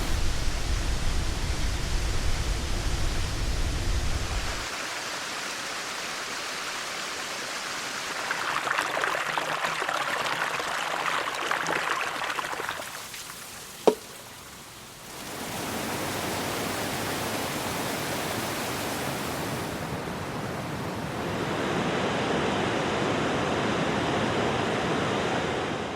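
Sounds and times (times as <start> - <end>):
waterfall rushing: 0.0 - 9.8, 15.0 - 21.9.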